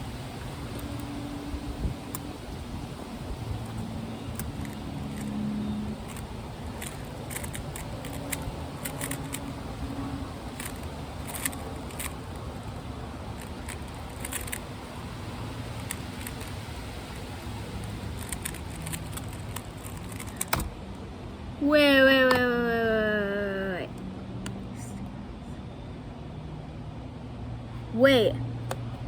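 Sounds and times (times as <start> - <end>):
wind noise on microphone: 0.0 - 20.8
rubik's cube clicking: 6.1 - 9.5, 10.6 - 12.4, 13.4 - 14.6, 18.2 - 20.8.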